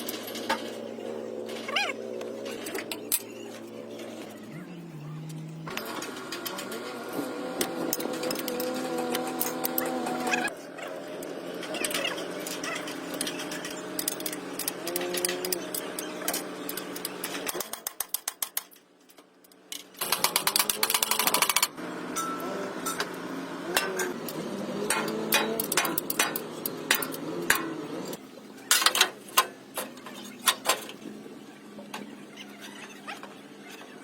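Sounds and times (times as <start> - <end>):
faint voices: 0.3 - 17.0.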